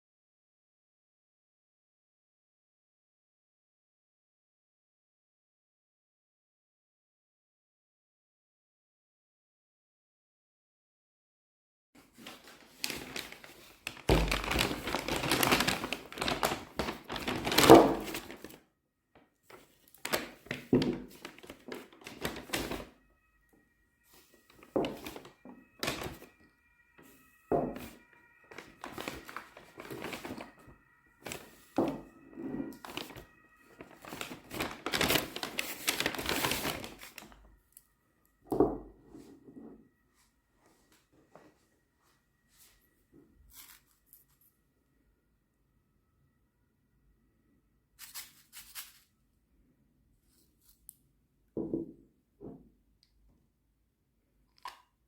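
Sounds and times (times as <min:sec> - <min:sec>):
objects being handled: 0:12.1 - 0:18.6, 0:19.5 - 0:23.0, 0:24.1 - 0:37.9, 0:43.5 - 0:44.5, 0:48.0 - 0:49.1
faint high tone: 0:21.2 - 0:47.8.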